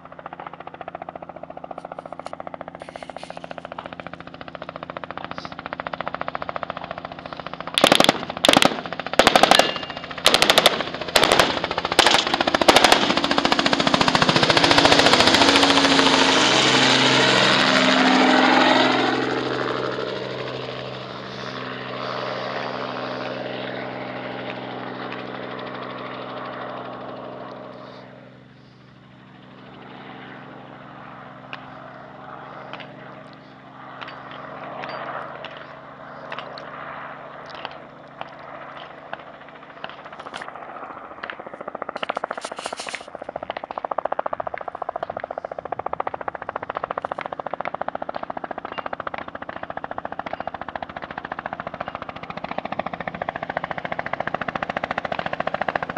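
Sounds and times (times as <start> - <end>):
helicopter running: 0.0 - 55.9
machine gun firing: 4.2 - 16.5
sharp cracks: 4.4 - 15.5, 41.2 - 50.5.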